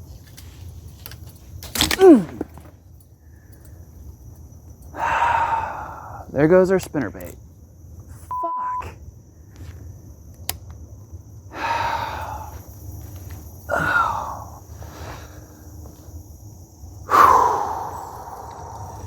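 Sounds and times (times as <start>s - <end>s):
faint high insect trill: 0.0s - 19.0s
man sighing heavily: 13.7s - 14.6s, 17.1s - 19.0s.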